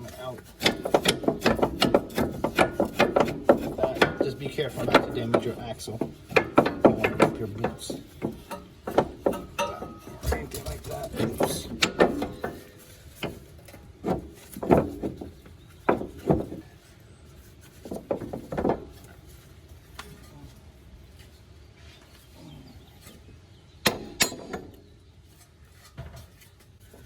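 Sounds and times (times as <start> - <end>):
metal knocks and clinks: 0.0 - 16.7, 23.8 - 24.9.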